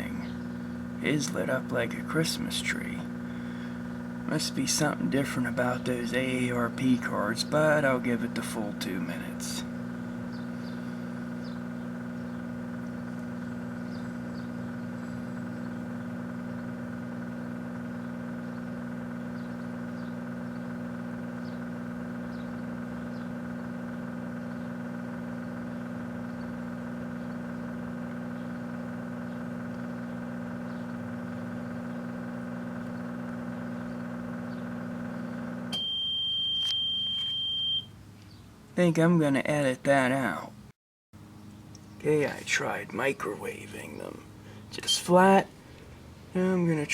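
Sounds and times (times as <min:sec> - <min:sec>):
microwave oven humming: 0:00.0 - 0:46.9
microwave long high beep: 0:32.4 - 0:38.0.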